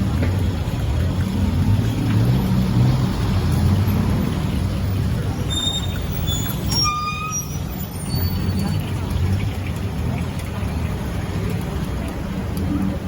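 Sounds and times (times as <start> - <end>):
vehicle engines running: 0.0 - 13.0
short high-pitched squeaks: 5.4 - 8.7.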